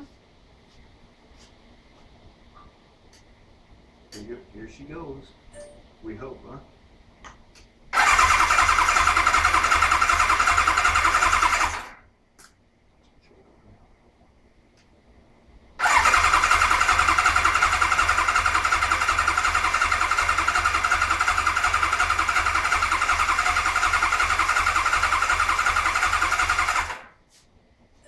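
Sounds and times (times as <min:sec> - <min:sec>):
motorcycle starter cranking engine: 0:08.0 - 0:12.0, 0:15.8 - 0:27.1.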